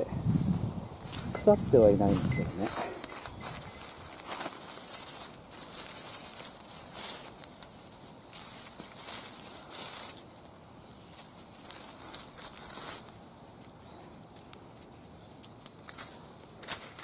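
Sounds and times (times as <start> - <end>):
dry leaves rustling and crinkling: 0.3 - 17.0
twigs snapping and clicking: 8.3 - 17.0.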